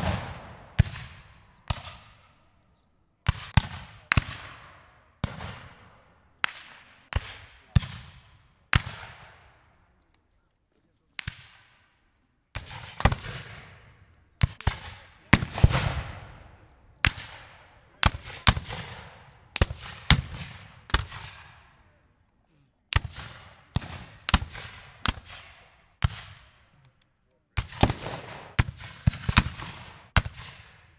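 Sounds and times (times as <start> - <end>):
rifle shots with echo: 0.0 - 2.6, 3.2 - 9.8, 11.2 - 22.0, 22.9 - 26.7, 27.6 - 30.9.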